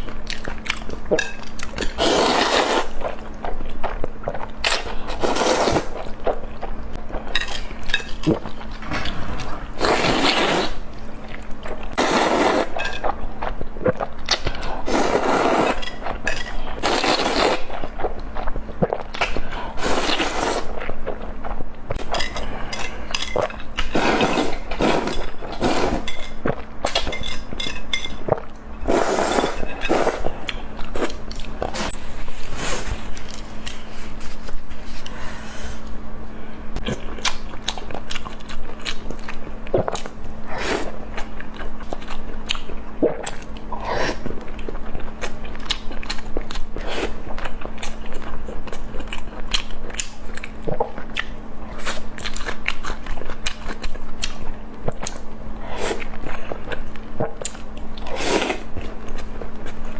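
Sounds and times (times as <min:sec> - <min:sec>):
chewing and scraping: 0:36.8 - 0:59.9.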